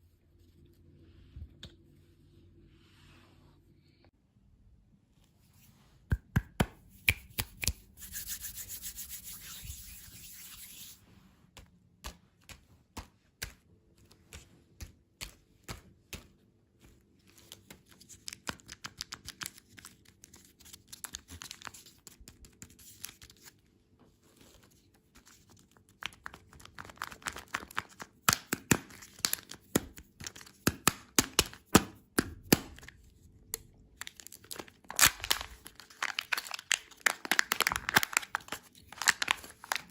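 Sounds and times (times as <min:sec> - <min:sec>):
candy packaging taps and clicks: 0:06.1 - 0:07.8, 0:11.5 - 0:22.8, 0:25.8 - 0:39.9
hissy rubbing of packaging: 0:07.8 - 0:11.2.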